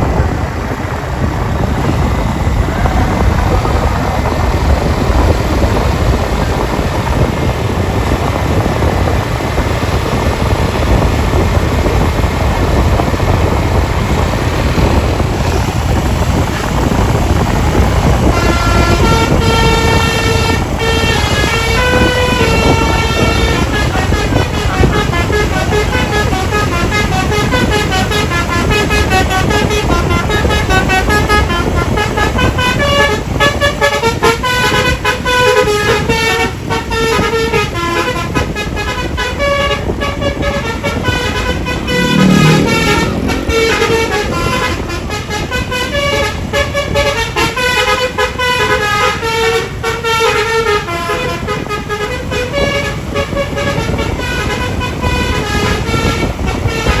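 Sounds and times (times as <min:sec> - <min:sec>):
low rumble: 0:00.0 - 0:47.2
musical air horn melody: 0:13.2 - 0:57.0
low sound sweeping up: 0:41.2 - 0:44.7.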